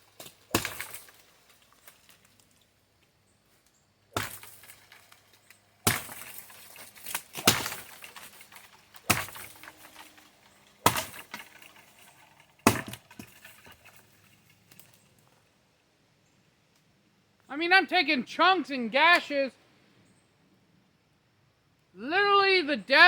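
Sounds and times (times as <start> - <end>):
sword chopping into wood: 0.2 - 1.1, 4.2 - 4.8, 5.8 - 10.1, 10.8 - 11.5, 12.6 - 13.4.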